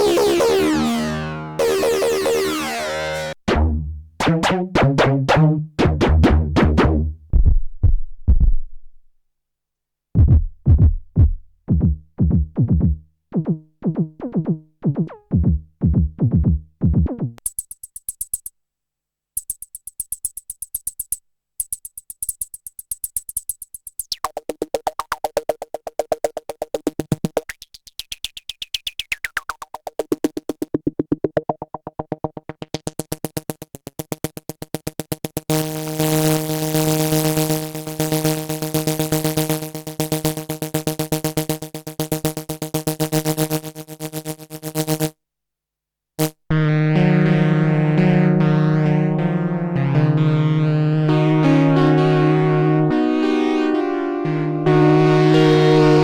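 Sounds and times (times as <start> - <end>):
synthesizer held chord: 0.0 - 4.6, 46.5 - 56.0
fast synth arpeggio: 0.0 - 6.6, 12.6 - 17.4, 46.6 - 56.0
high rapid synth ticking: 0.0 - 6.8, 10.2 - 18.5, 19.4 - 35.7
synth bass sequences: 0.0 - 7.5, 10.2 - 17.4, 46.2 - 56.0.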